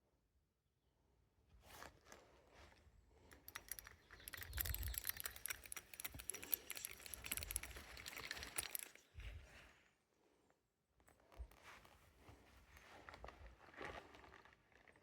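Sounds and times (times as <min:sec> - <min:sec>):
small hard objects rattling: 0:03.3 - 0:09.1.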